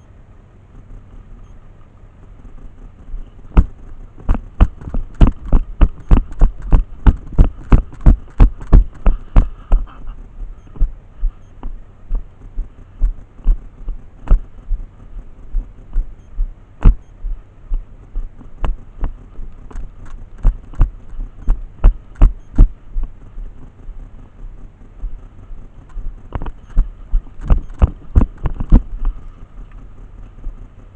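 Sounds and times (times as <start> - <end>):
sharp clicks and knocks: 3.5 - 10.0, 15.5 - 23.8, 25.8 - 29.8
footsteps thumping: 3.6 - 9.9.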